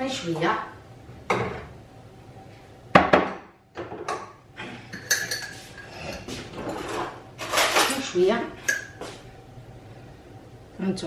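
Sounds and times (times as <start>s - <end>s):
utensils and dishes clattering: 3.8s - 9.0s.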